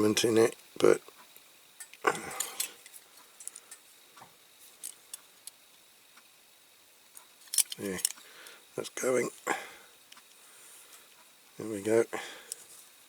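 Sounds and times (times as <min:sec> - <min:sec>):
tool handling sound: 0:07.4 - 0:08.2.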